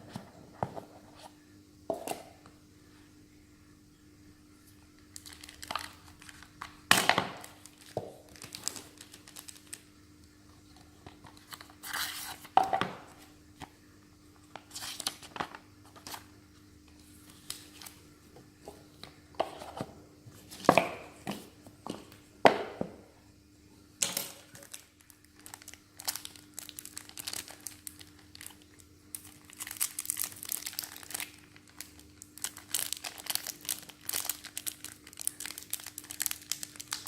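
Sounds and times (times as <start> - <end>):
faint steady hum: 0.0 - 37.0
packaging crinkling and tearing: 5.1 - 9.9, 14.7 - 16.2, 24.2 - 37.0.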